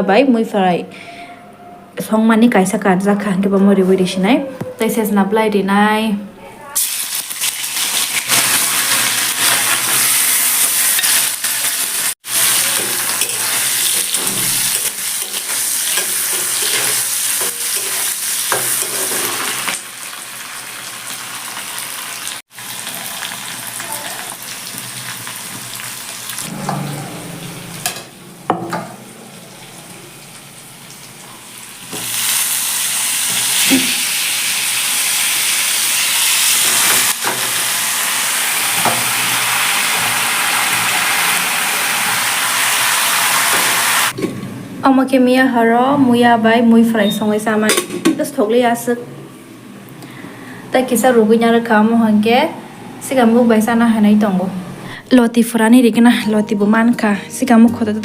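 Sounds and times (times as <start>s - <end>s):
food sizzling in oil: 6.8s - 26.6s, 29.1s - 44.2s.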